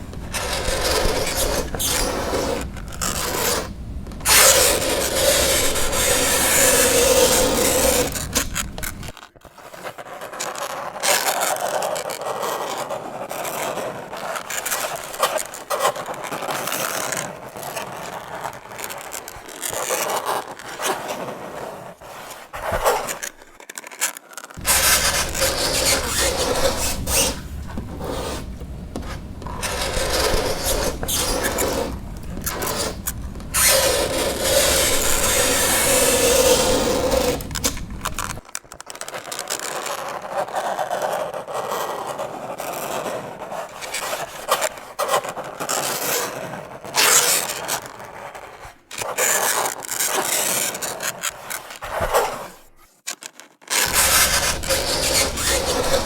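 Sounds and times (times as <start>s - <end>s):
fingernails scraping a chalkboard: 0.0s - 23.3s, 24.6s - 38.4s, 53.8s - 56.0s.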